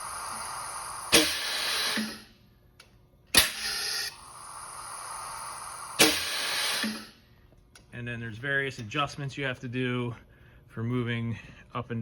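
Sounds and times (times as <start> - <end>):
air valve bangs: 0.0 - 2.3, 3.3 - 7.2
hissing air: 0.0 - 2.3, 3.4 - 7.2.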